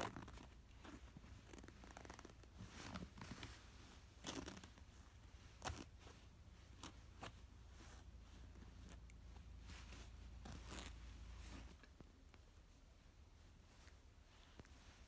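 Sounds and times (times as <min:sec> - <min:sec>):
faint rustles: 0:00.0 - 0:15.0
low room hum: 0:00.0 - 0:15.0.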